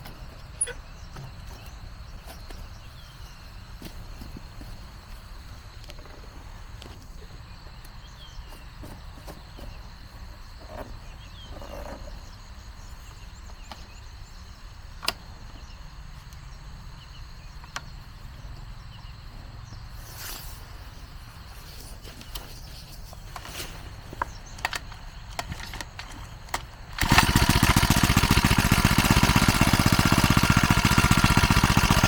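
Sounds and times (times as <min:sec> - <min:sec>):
sharp clicks: 0:24.2 - 0:28.0.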